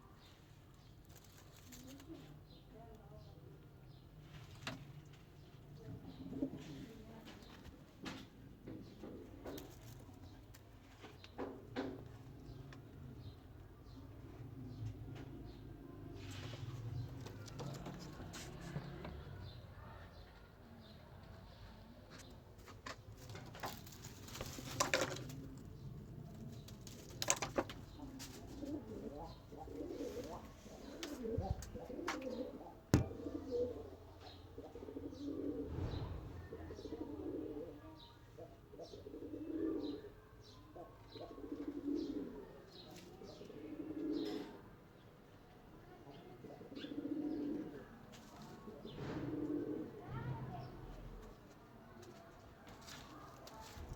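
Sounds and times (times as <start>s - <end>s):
pigeons cooing: 4.6s - 7.2s, 8.2s - 19.6s, 22.1s - 45.4s, 46.1s - 50.8s.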